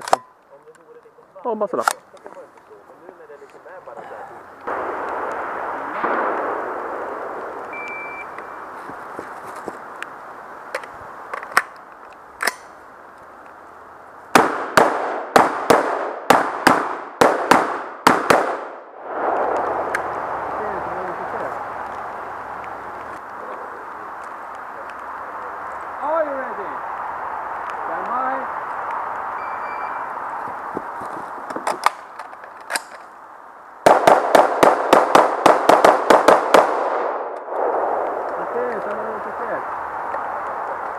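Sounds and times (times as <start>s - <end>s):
faint sharp cracks: 4.6s - 7.7s, 33.8s - 39.0s
rifle shots with echo: 4.7s - 7.6s, 14.3s - 19.3s, 33.8s - 38.0s.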